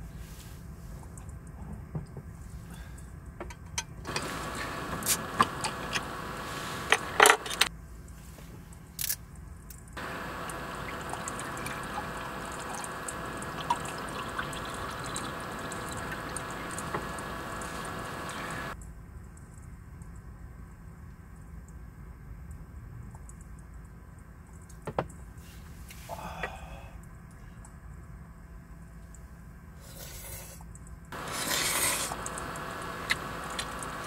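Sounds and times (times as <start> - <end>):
water pouring: 10.0 - 18.8.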